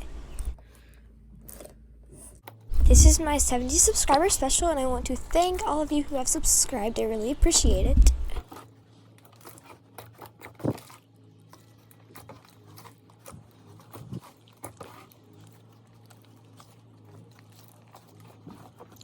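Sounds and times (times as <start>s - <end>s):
low steady hum: 0.0s - 9.6s.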